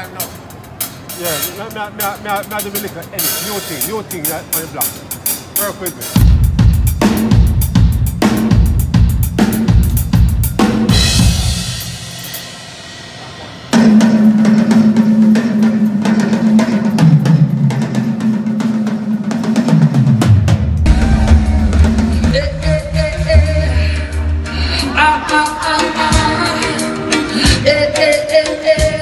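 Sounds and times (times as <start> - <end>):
drum kit: 0.0 - 29.0
reggae band playing: 0.0 - 29.0
steady low bass line: 20.8 - 24.9.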